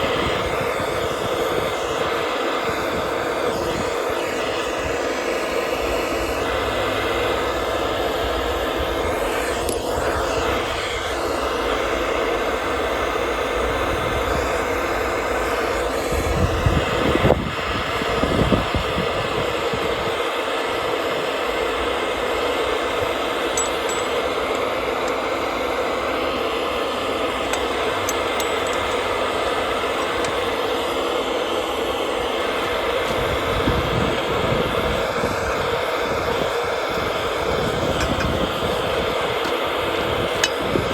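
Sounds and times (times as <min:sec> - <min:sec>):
mechanical running noise: 0:18.4 - 0:40.9.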